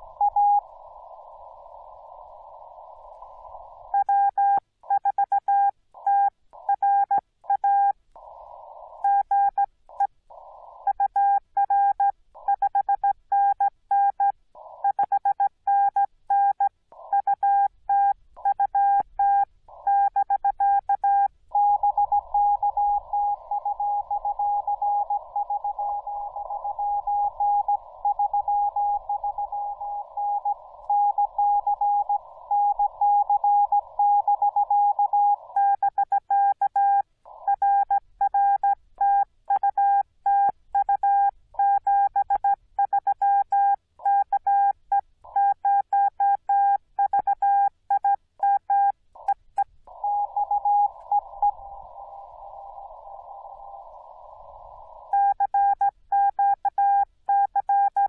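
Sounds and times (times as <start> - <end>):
radio receiver hiss: 0.0 - 3.9, 21.8 - 34.0, 49.2 - 55.7.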